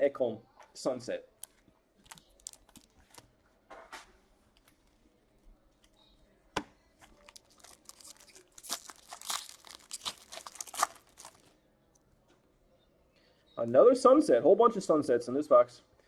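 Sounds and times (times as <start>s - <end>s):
foil wrapper tearing and crinkling: 2.1s - 2.9s, 7.2s - 11.5s.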